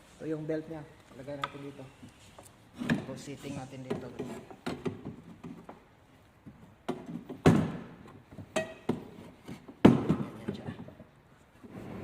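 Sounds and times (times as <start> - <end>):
knocks and clunks of fitting parts: 3.8 - 11.1.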